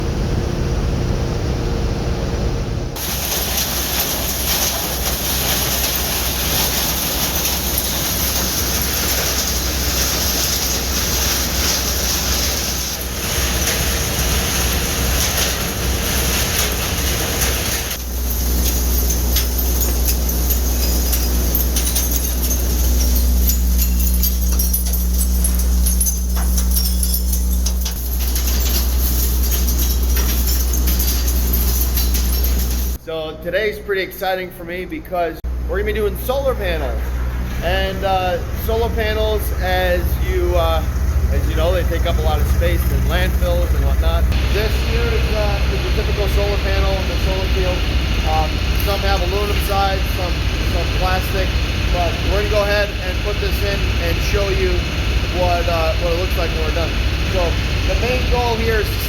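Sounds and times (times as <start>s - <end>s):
machine humming: 0.0s - 33.4s, 35.4s - 59.0s
material crackling and rattling: 3.0s - 33.0s.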